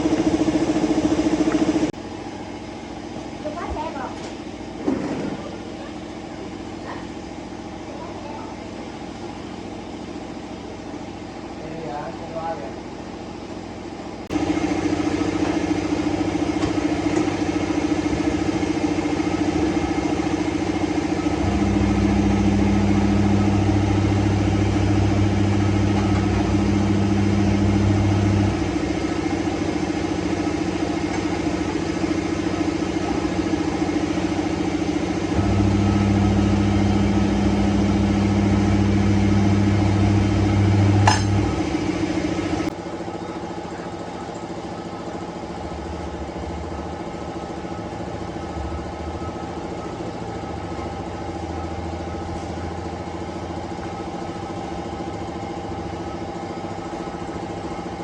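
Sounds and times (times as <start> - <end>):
motor humming: 0.0 - 2.0, 14.3 - 42.7
deeper heavier hum: 21.2 - 29.9.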